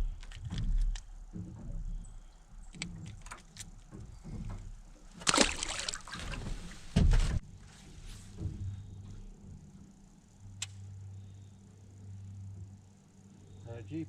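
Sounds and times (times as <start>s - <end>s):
heavy thump against boat hull: 3.9s - 7.4s
fish splashing in water: 5.1s - 6.8s.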